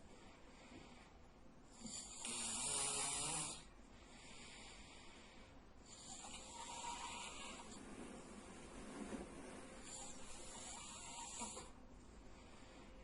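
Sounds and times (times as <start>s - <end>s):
man snoring: 1.8s - 3.7s, 5.9s - 7.8s, 9.8s - 11.8s.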